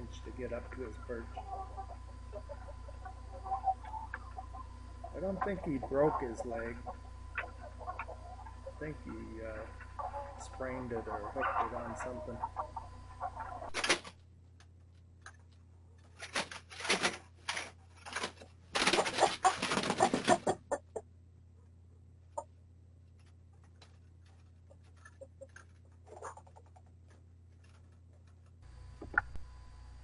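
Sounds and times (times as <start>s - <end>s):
chickens clucking: 0.0s - 14.0s, 18.2s - 21.0s, 24.8s - 27.0s
chickens squawking and rustling: 0.0s - 14.2s, 16.0s - 21.0s, 24.3s - 27.8s.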